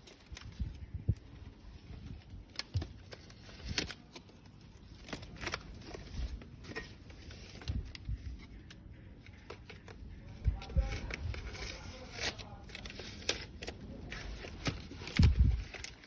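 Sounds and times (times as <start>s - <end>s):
packaging clicks and taps: 8.4s - 11.2s.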